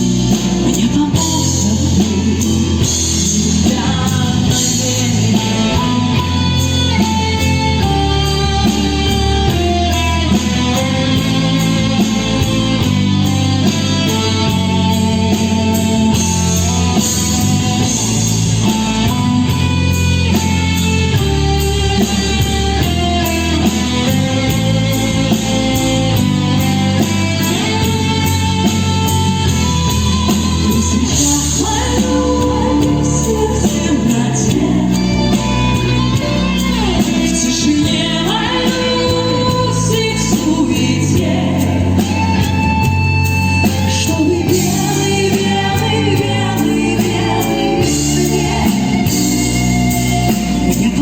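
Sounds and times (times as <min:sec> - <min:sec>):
pop song with band: 0:00.0 - 0:51.0
woman singing: 0:00.2 - 0:12.0, 0:30.2 - 0:42.8, 0:43.6 - 0:51.0.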